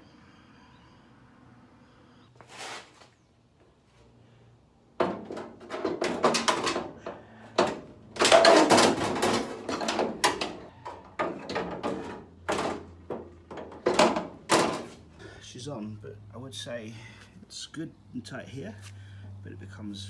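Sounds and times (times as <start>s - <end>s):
metal knocks and clunks: 5.0s - 15.1s.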